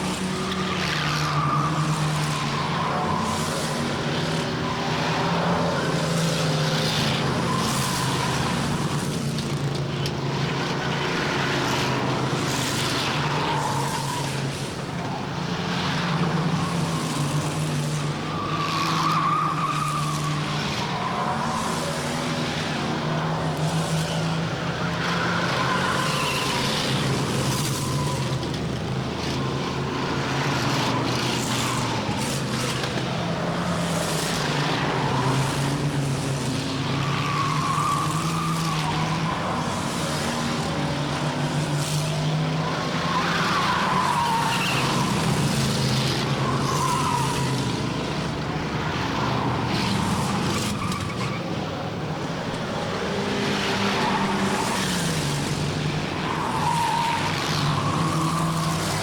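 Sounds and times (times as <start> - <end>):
race car engines droning: 0.0 - 59.0
tyres squealing: 16.1 - 48.2, 48.8 - 59.0.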